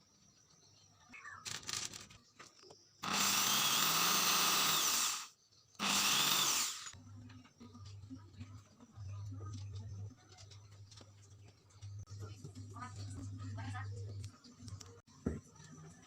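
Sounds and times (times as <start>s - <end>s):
electric power tool running: 3.0s - 7.0s.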